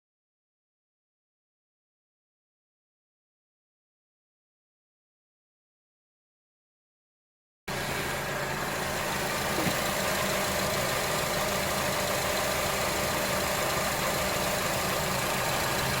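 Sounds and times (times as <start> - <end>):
car engine idling: 7.7 - 16.0.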